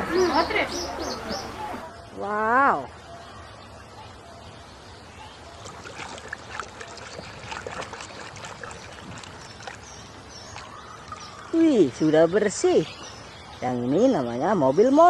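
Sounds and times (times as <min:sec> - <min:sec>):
water splashing: 0:05.4 - 0:13.3.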